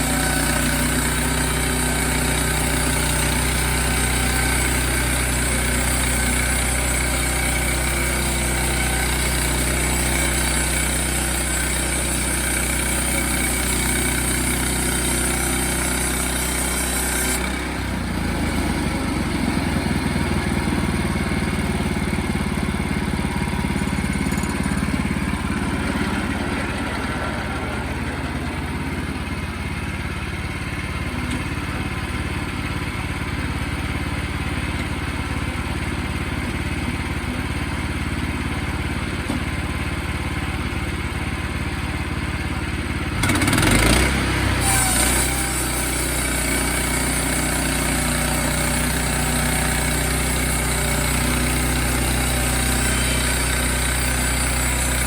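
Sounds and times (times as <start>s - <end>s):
saw cutting hiss: 0.0s - 30.2s, 43.3s - 55.0s
sawmill engine running: 0.0s - 55.0s.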